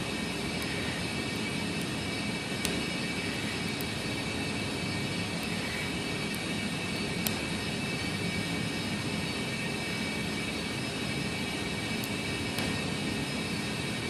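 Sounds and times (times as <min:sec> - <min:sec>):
steady hum and hiss: 0:00.0 - 0:14.0.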